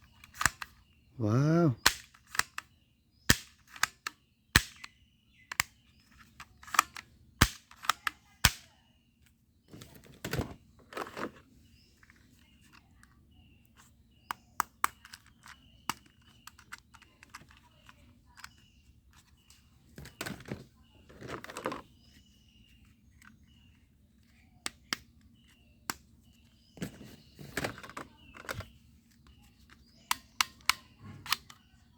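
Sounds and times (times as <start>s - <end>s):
toy rifle plastic clicks: 0.0s - 0.8s, 1.8s - 8.7s, 14.3s - 18.8s, 27.6s - 31.7s.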